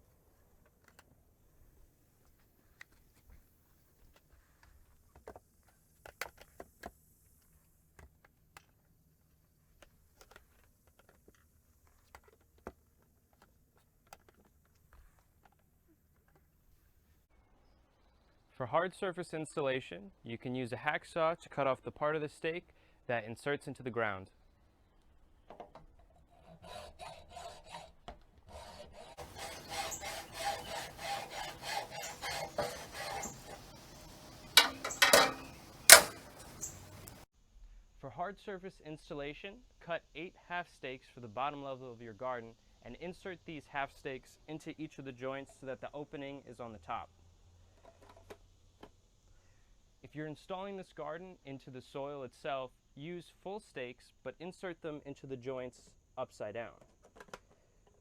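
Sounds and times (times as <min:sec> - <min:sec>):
hacksaw cutting: 0:26.3 - 0:27.9, 0:28.5 - 0:37.2
boards and brackets tapping: 0:29.2 - 0:37.2
sharp knocks: 0:29.2 - 0:37.2.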